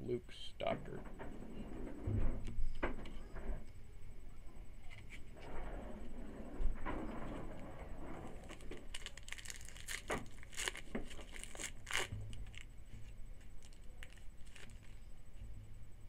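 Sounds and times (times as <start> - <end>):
card pack wrapper tearing: 8.4 - 12.7, 13.4 - 15.0.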